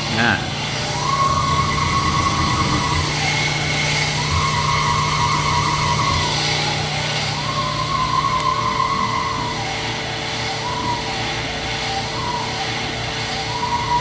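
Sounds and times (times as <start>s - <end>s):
honing machine high whine: 0.0s - 14.0s
steady motor hum: 0.0s - 14.0s.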